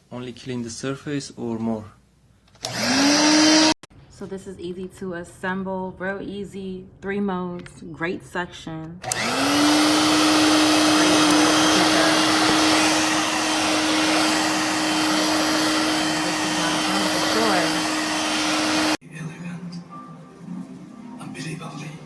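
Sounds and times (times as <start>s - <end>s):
vacuum cleaner motor whining: 2.6s - 3.8s, 9.0s - 19.0s.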